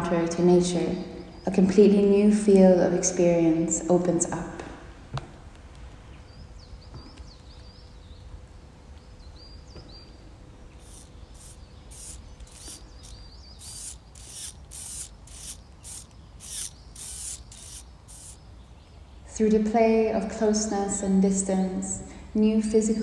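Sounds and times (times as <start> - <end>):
faint high bird chirps: 9.3 - 18.5
short raspy insect-like pulses: 10.8 - 18.4.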